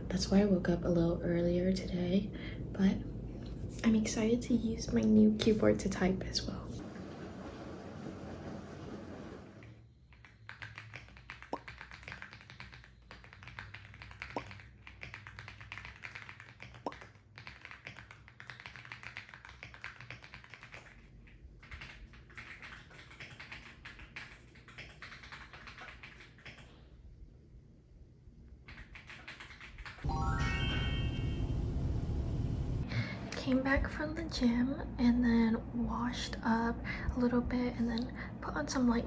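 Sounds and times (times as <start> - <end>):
mechanical keyboard typing: 10.1 - 26.7, 28.7 - 30.1.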